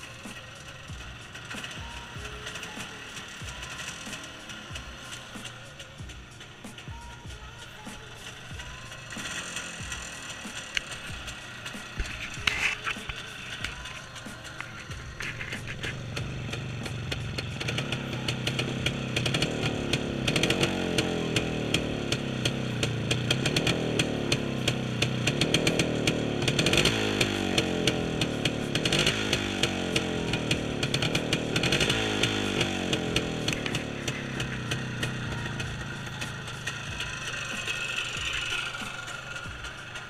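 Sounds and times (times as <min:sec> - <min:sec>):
two-stroke motorcycle engine revving: 0:00.0 - 0:40.0.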